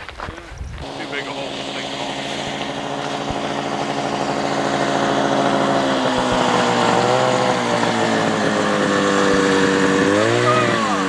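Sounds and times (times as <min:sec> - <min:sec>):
motor engine running under load: 0:00.2 - 0:11.0.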